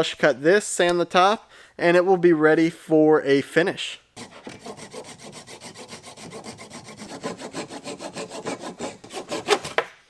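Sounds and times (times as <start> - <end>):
hand saw cutting wood: 4.2 - 10.0.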